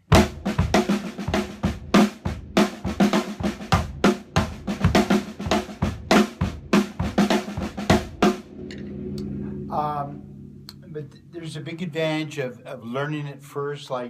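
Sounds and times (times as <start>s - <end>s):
snare drum pattern: 0.0s - 8.4s
bass drum strokes: 0.1s - 14.0s.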